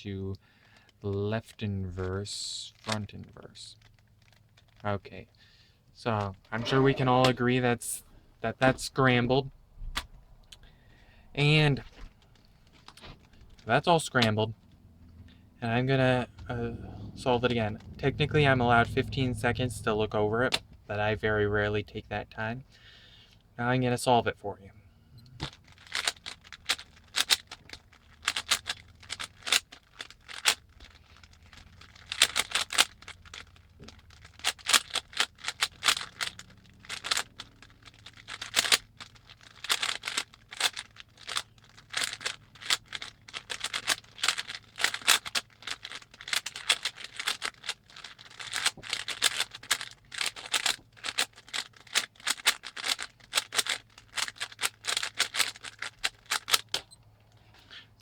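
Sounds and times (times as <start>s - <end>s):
puzzle cube plastic clicks: 2.7s - 4.9s, 11.5s - 14.8s, 25.3s - 57.0s.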